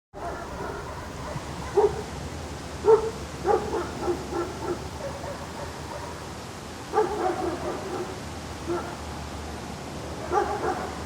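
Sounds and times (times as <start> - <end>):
outdoor background ambience: 0.1 - 11.0
dog barking: 0.2 - 2.1, 2.8 - 6.2, 6.9 - 9.0, 10.2 - 11.0.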